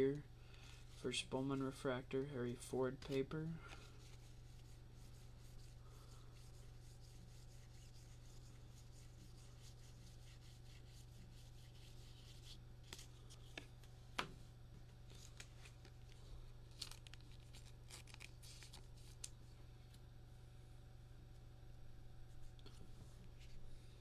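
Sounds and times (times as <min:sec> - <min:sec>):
steady low hum: 0:00.0 - 0:24.0
trading cards rustling and clicking: 0:15.1 - 0:19.4.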